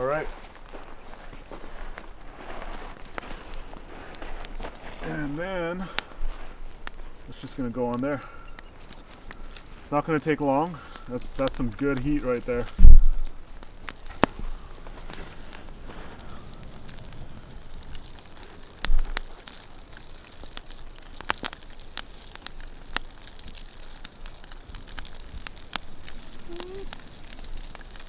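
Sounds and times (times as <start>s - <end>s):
campfire crackling: 0.0s - 28.0s
sharp pops from burning wood: 0.0s - 28.0s.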